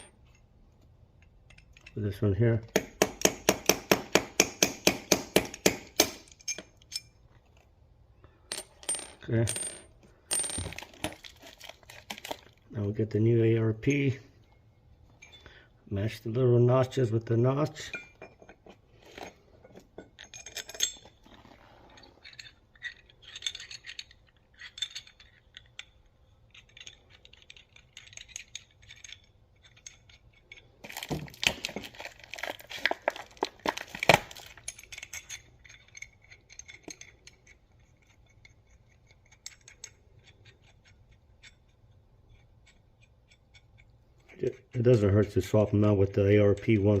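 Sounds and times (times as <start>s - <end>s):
small steel parts clinking: 0.0s - 0.5s, 1.1s - 2.1s, 5.5s - 7.7s, 8.3s - 12.6s, 17.8s - 44.8s.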